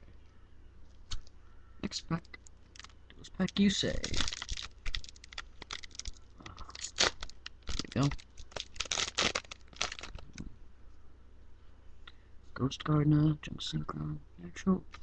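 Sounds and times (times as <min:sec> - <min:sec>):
foil wrapper crinkling and tearing: 0:02.7 - 0:10.4.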